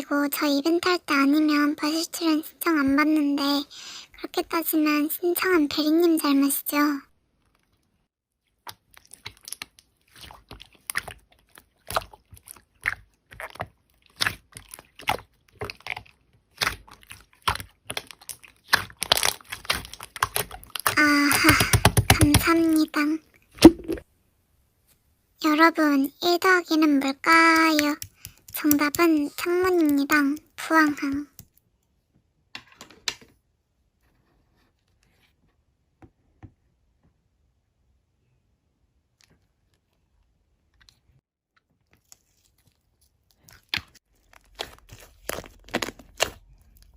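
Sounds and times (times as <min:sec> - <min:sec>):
slime squished by hand: 0:08.6 - 0:22.5, 0:23.6 - 0:24.0, 0:41.8 - 0:46.9
slime being pressed: 0:23.6 - 0:24.0.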